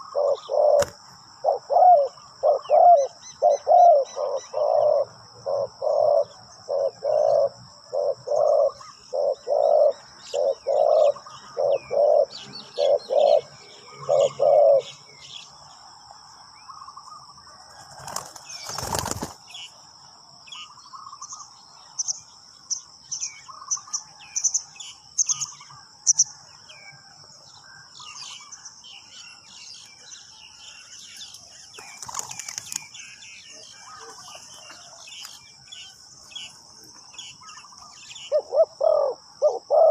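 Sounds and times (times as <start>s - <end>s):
dove cooing: 0.0s - 15.0s, 37.5s - 39.9s
small birds chirping: 0.0s - 39.9s
noisy rustle: 17.7s - 19.7s.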